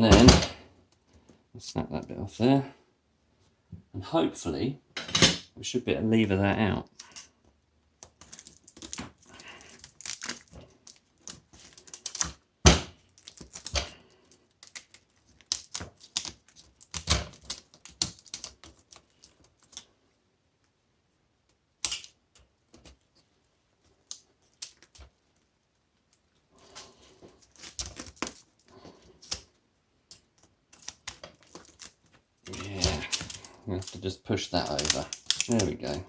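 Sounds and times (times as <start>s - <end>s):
hand tools clicking on metal: 34.6s - 36.0s.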